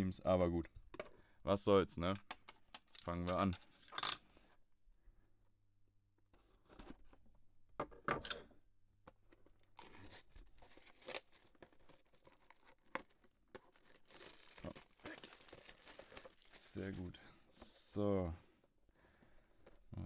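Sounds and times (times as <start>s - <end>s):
crinkling rustle: 9.5s - 17.2s
packaging being torn open: 9.8s - 16.9s.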